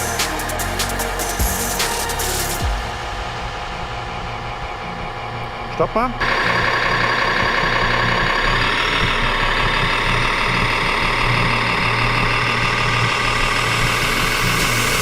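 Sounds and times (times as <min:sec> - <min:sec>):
model truck motor whining: 0:06.2 - 0:15.0.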